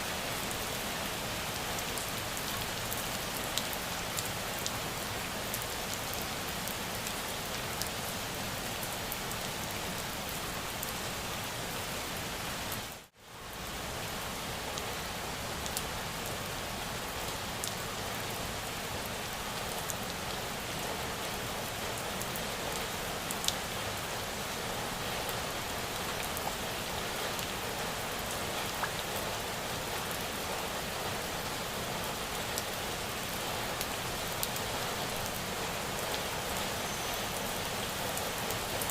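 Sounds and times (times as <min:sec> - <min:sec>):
steady rain: 0:00.0 - 0:38.9.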